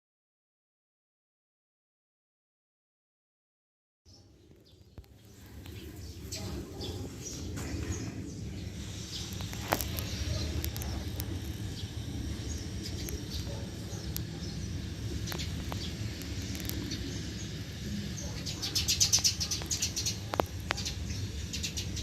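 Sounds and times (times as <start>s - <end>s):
birds chirping: 4.1s - 22.0s
sharp clicks: 9.1s - 17.6s.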